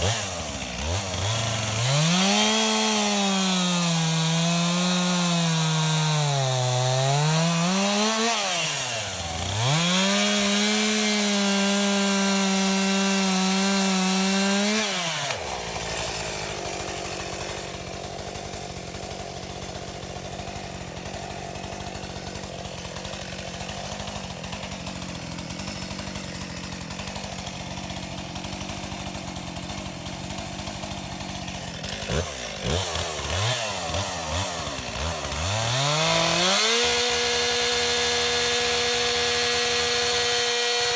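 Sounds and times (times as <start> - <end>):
chainsaw revving and idling: 0.0 - 40.9.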